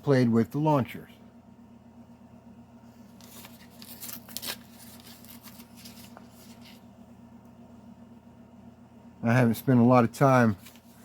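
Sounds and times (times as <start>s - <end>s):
low steady hum: 0.0s - 11.0s
plastic toys and packaging rustling: 3.1s - 6.8s.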